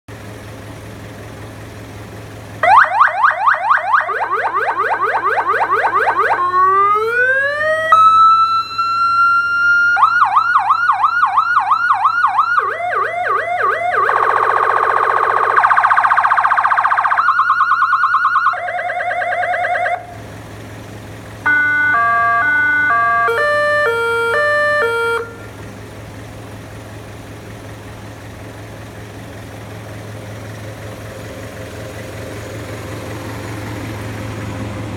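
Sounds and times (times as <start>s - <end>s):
electronic vehicle siren: 2.6s - 20.2s, 21.4s - 25.6s.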